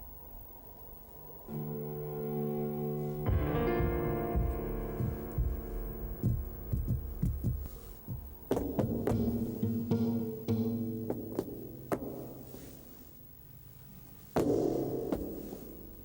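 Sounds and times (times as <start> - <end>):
held low chords: 1.5 - 12.1
deep pulsing thuds: 3.3 - 12.5.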